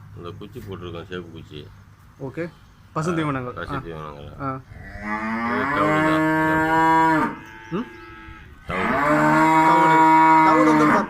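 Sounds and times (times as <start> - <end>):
cow mooing: 4.7 - 11.0.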